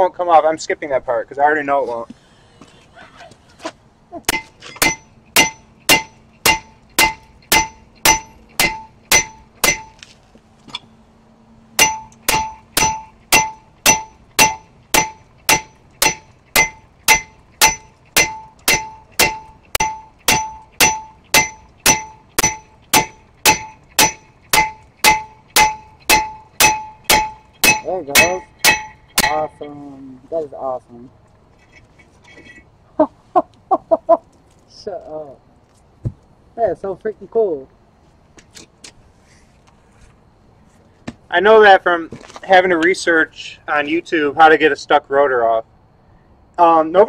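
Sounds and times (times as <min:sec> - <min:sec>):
hammer clanging on metal: 0:04.3 - 0:10.1, 0:11.8 - 0:29.8.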